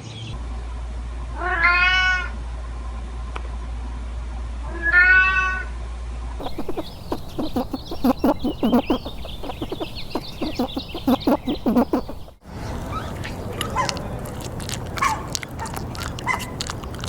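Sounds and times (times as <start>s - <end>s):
high peeping calls: 6.4s - 13.8s
chickens clucking: 6.4s - 17.0s.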